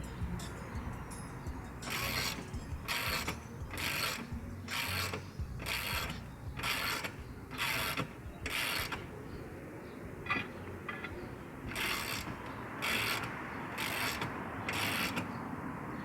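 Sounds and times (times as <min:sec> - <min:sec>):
hand tool ratcheting: 0:01.8 - 0:09.1, 0:11.7 - 0:15.3.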